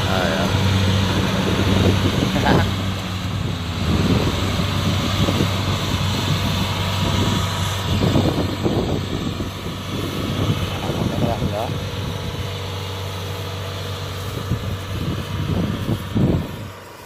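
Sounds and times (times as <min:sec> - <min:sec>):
combine harvester diesel engine: 0:00.0 - 0:17.0.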